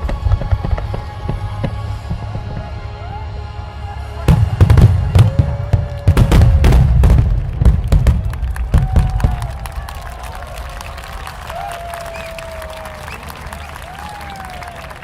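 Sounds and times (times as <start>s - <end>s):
music playing: 0.0s - 8.8s
fireworks bangs and booms: 4.3s - 10.0s.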